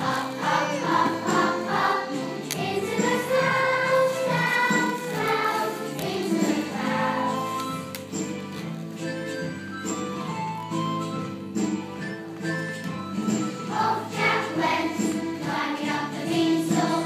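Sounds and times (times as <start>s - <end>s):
children's choir singing: 0.0s - 7.8s, 13.6s - 17.0s
musical accompaniment: 0.0s - 17.0s.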